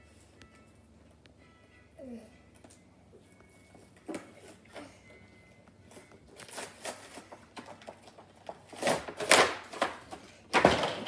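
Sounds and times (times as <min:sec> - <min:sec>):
packaging rustling and crinkling: 0:05.9 - 0:11.0.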